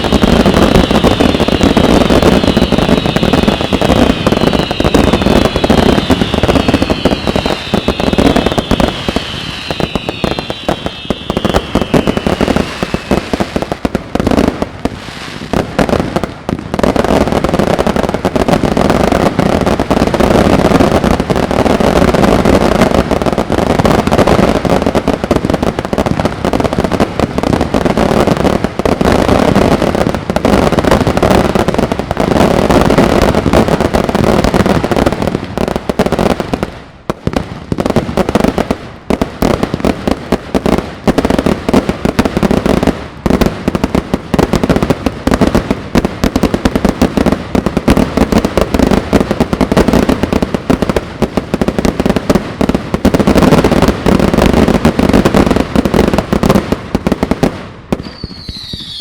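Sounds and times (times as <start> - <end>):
firework whistles gliding down: 0.0 - 13.7, 57.9 - 59.0
fireworks bangs and crackling: 0.0 - 59.0.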